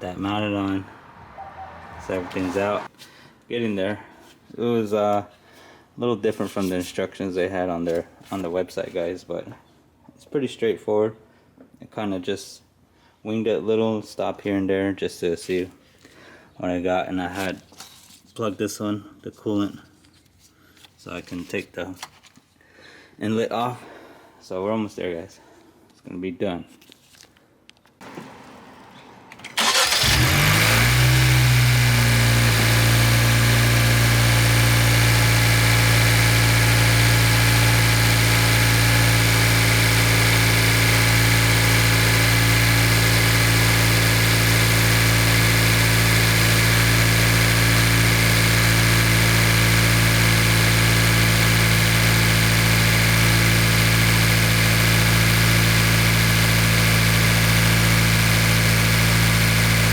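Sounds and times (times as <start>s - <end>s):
car engine starting and idling: 0.0s - 2.9s, 28.0s - 59.9s.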